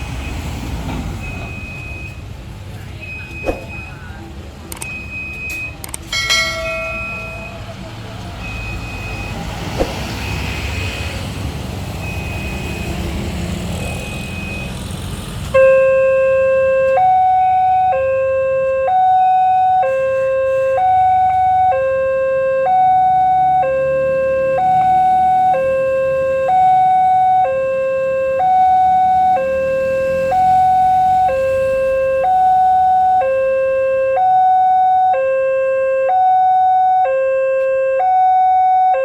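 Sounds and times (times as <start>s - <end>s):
traffic noise: 0.0s - 39.0s
two-tone crossing alarm: 1.2s - 2.2s, 3.0s - 11.0s, 11.9s - 14.9s, 15.5s - 39.0s
faint high beep: 3.0s - 5.8s, 6.8s - 7.7s.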